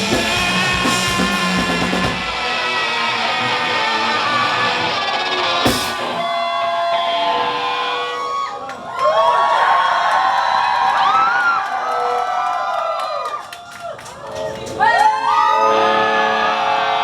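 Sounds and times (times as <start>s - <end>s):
sharp drum hit: 0.0s - 2.5s, 5.7s - 6.2s
electric guitar chords ringing: 0.0s - 6.4s
live rock band playing: 0.0s - 8.2s.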